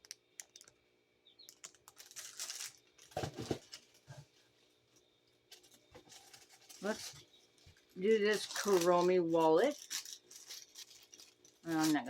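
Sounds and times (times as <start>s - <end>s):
plastic packaging rustling: 1.5s - 12.0s
dull thumps of objects set down: 3.1s - 4.3s.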